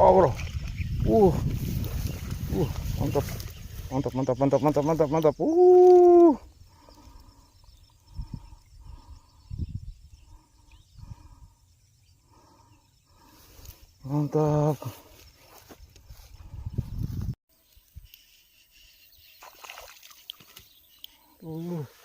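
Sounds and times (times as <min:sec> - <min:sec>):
man calling out: 0:00.0 - 0:00.4, 0:03.9 - 0:06.4, 0:14.0 - 0:15.0, 0:21.4 - 0:22.0.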